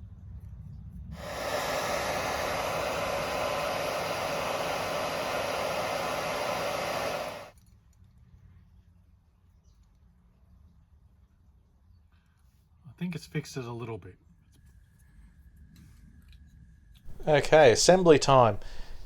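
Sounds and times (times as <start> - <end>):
hairdryer blowing: 1.2 - 7.5, 17.1 - 19.0
hairdryer switch click: 17.1 - 19.0.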